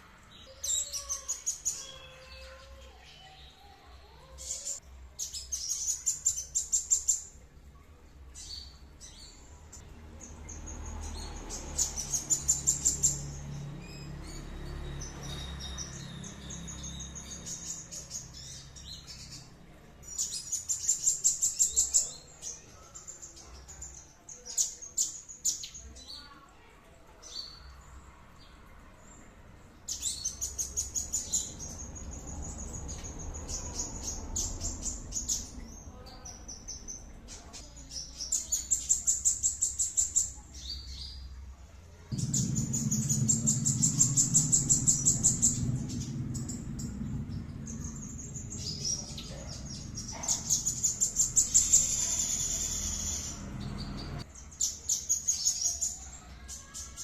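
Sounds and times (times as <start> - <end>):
songbird chirping: 0.0 - 57.0
low hum: 42.1 - 54.2.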